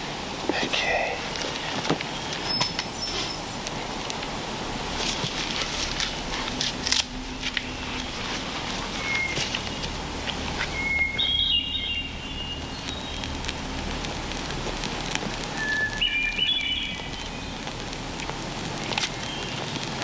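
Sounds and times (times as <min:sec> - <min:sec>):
campfire crackling and popping: 0:00.0 - 0:20.0
songbird whistling: 0:02.0 - 0:03.6, 0:08.7 - 0:13.4, 0:15.5 - 0:17.7.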